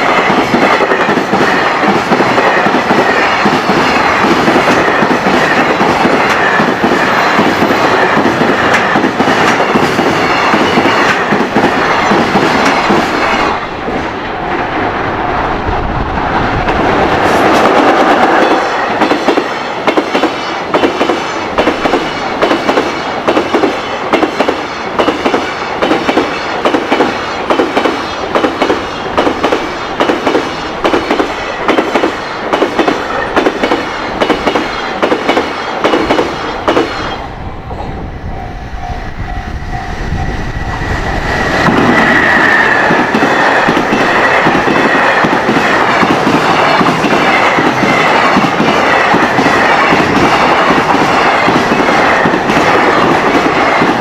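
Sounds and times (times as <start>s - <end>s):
train wheels clattering over rail joints: 16.5s - 37.2s.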